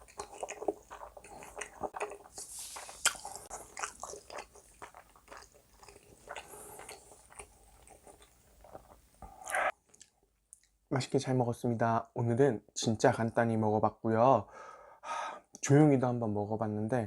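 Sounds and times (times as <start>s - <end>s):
chewing food: 0.0s - 10.8s.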